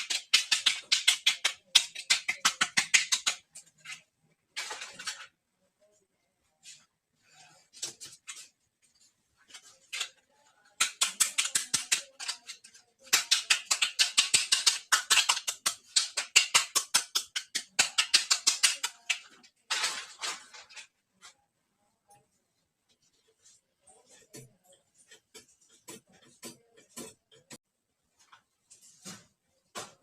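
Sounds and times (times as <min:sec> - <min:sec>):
plastic pieces clicking and scratching: 0:00.0 - 0:05.4, 0:09.4 - 0:21.0.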